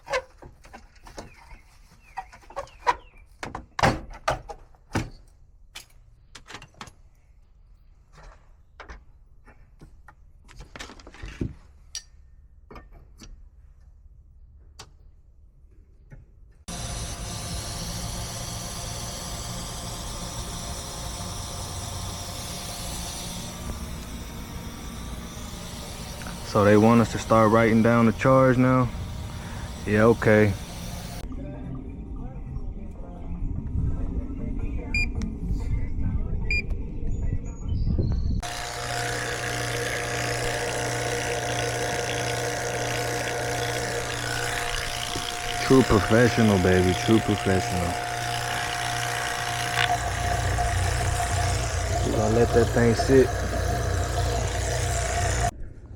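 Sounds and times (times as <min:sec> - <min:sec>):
steady mechanical hiss: 0:16.7 - 0:31.2, 0:38.4 - 0:55.5
vacuum pump humming and whining: 0:16.7 - 0:31.2, 0:38.4 - 0:55.5.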